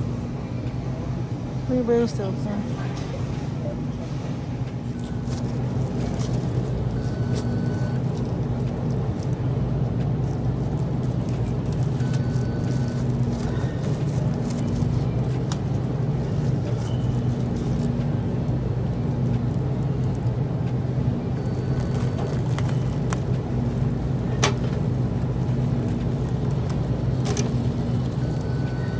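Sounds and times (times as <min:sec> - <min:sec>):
low machine hum: 0:00.0 - 0:28.9.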